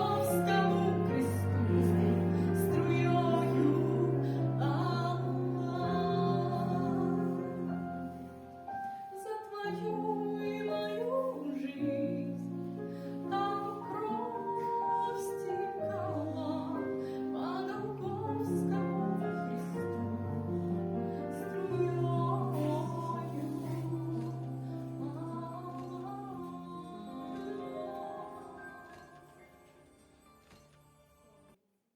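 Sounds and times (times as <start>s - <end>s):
woman singing slow melody: 0.0s - 8.4s, 9.1s - 29.5s.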